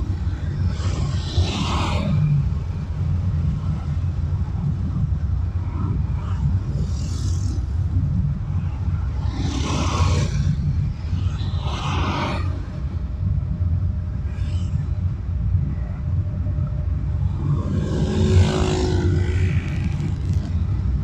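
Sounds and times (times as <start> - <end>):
engine and tyre rumble: 0.0 - 21.0
vehicles swishing past: 5.4 - 13.1, 17.1 - 21.0.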